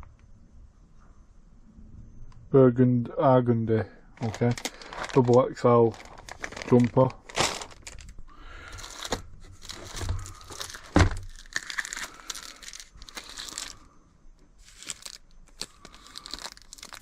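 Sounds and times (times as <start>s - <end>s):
packaging crinkling and rustling: 4.2s - 13.9s, 14.6s - 17.0s.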